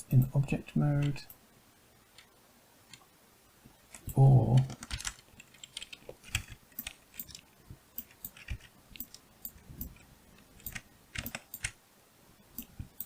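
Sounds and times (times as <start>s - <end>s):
computer keyboard keys clicking: 4.0s - 7.4s, 8.0s - 10.0s, 10.6s - 11.8s.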